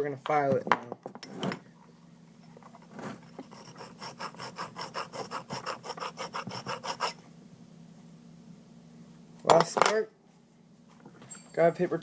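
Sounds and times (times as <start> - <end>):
hand file rasping on metal: 3.3 - 7.2.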